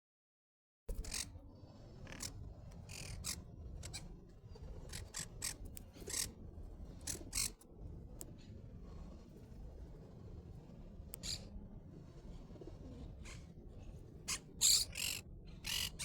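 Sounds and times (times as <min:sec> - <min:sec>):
parrot raspy scratching noises: 0:01.0 - 0:04.1, 0:04.8 - 0:07.6, 0:14.2 - 0:16.0
low background rumble: 0:01.0 - 0:16.0.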